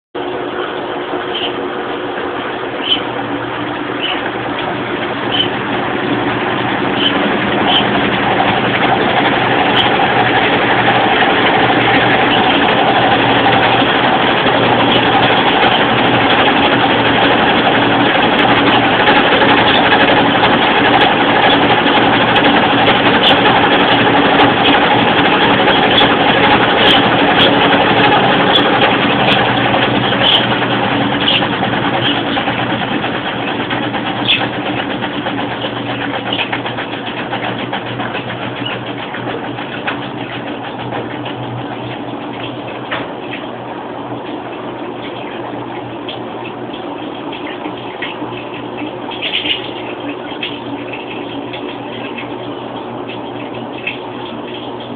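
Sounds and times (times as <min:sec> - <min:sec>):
washing machine spinning: 0:00.2 - 0:54.9.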